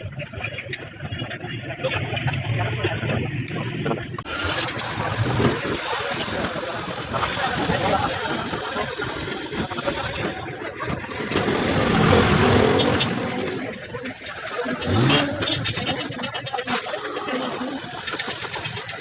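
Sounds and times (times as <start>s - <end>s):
engine revving: 4.2s - 19.0s.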